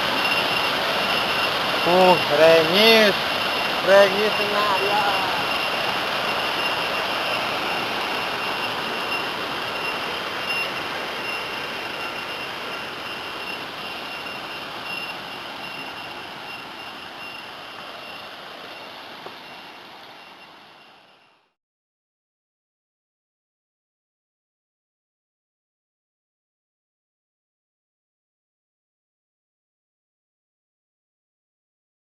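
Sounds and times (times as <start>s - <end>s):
waterfall rushing: 0.0s - 20.9s.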